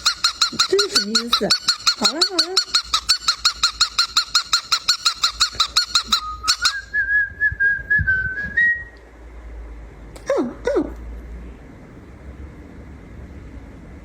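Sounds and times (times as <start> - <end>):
cockatiel chirping: 0.0 - 6.9
cockatiel whistling: 0.0 - 9.0.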